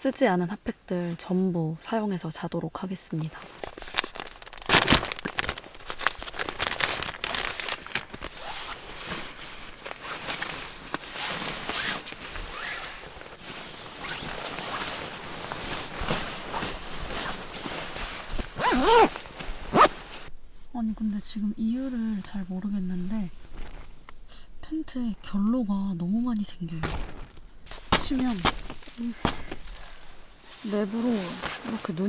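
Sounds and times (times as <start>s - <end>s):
plastic wrappers crinkling: 3.1s - 20.3s, 21.8s - 32.0s
zipper-like rasps: 11.2s - 13.1s, 14.0s - 14.8s, 18.4s - 20.2s.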